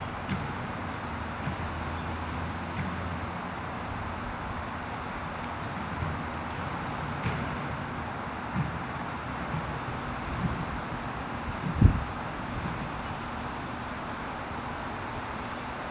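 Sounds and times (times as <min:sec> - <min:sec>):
low outdoor rumble: 0:00.0 - 0:15.9
wind on microphone: 0:10.2 - 0:13.5.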